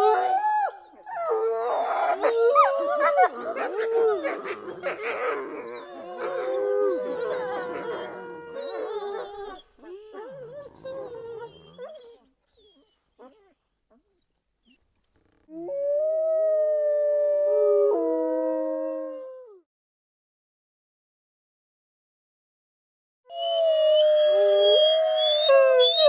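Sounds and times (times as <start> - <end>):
wolves howling: 0.0 - 12.2, 23.3 - 26.0.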